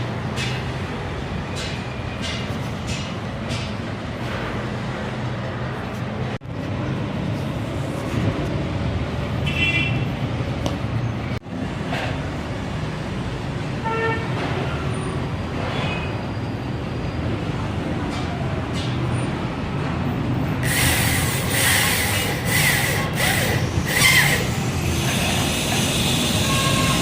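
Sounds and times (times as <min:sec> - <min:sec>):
road traffic: 0:00.0 - 0:27.0
vehicle horns tooting: 0:09.4 - 0:10.1, 0:13.8 - 0:14.4, 0:26.0 - 0:27.0.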